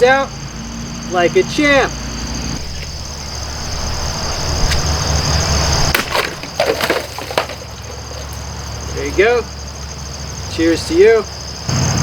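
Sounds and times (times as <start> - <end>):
construction machinery rumble: 0.0 - 12.0
high hum: 2.2 - 6.6
pieces knocking and falling: 2.7 - 8.6
knife chopping through bottle: 4.5 - 8.4.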